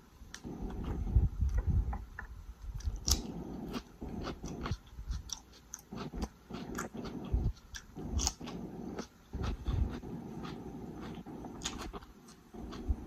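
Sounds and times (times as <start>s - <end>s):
chewing sandwich: 2.7s - 13.0s.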